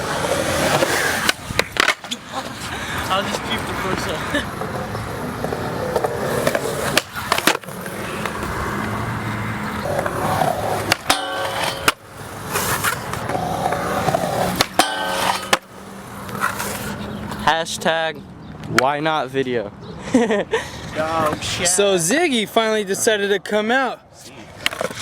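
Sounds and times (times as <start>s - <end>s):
skateboard clacking on ground: 0.0s - 17.5s, 24.5s - 25.0s
skateboard wheels rolling on concrete: 0.0s - 19.1s, 20.2s - 25.0s
ringing squeals: 11.1s - 12.8s, 14.6s - 16.0s.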